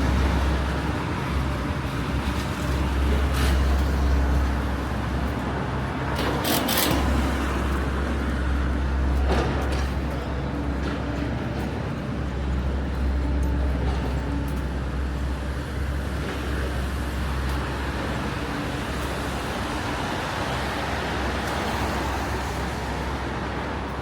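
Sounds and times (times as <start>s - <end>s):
cars and buses passing: 0.0s - 24.0s
tyres hissing on wet road: 16.8s - 23.7s.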